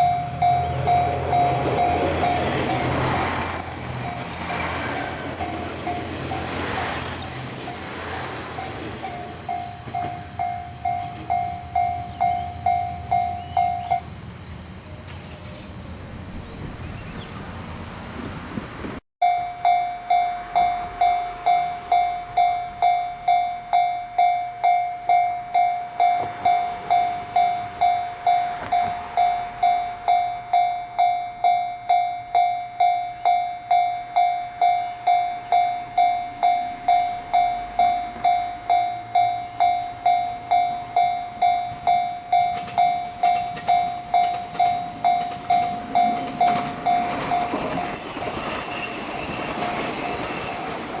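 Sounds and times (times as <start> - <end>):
rushing noise: 0.0 - 10.3, 45.5 - 51.0
level crossing warning bell: 0.0 - 14.1, 19.2 - 51.0.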